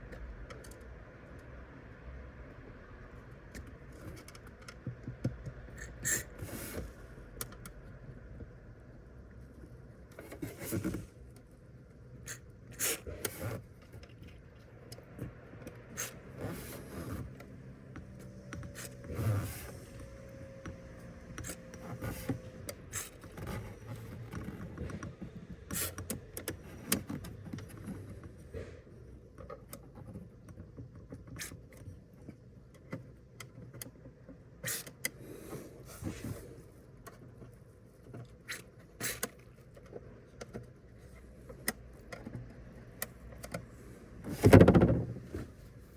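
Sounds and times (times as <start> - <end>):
plastic clicks and knocks: 3.5 - 5.7.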